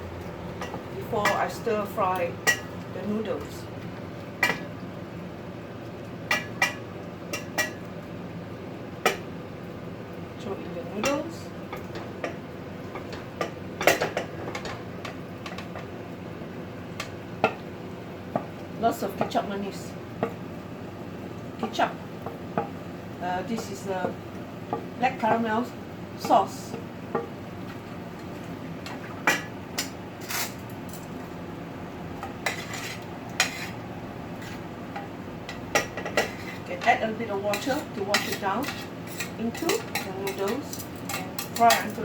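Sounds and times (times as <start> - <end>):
utensil scraping against pot: 29.8 - 30.6, 32.4 - 33.8, 34.4 - 34.7, 36.0 - 42.0.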